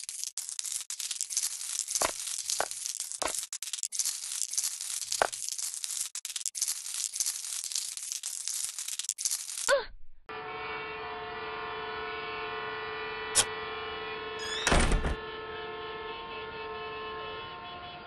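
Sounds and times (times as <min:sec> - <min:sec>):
crackling crinkling noise: 0:00.0 - 0:09.8.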